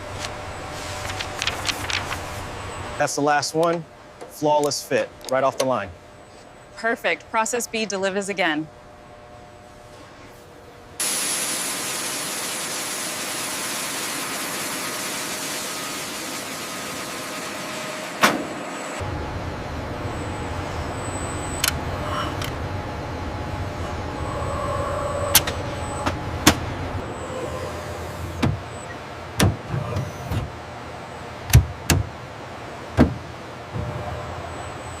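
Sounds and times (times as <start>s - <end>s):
low machinery hum: 0.0s - 35.0s
machinery hiss: 11.0s - 18.1s.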